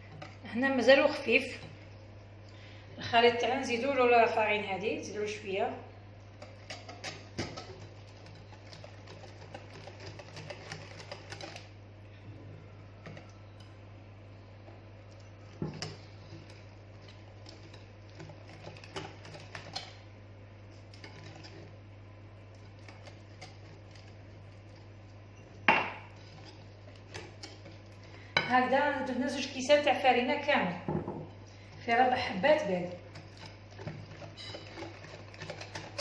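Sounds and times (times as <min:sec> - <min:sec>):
steady low hum: 0:00.0 - 0:36.0.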